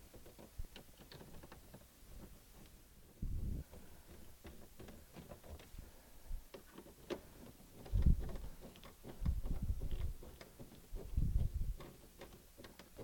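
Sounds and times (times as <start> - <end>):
dull low bumps: 7.9 - 10.3, 11.0 - 11.8.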